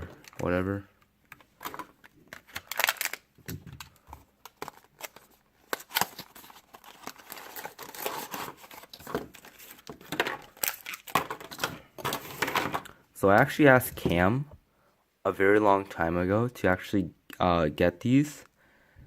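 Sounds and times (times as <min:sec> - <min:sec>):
packaging tearing and crinkling: 0:01.7 - 0:12.6.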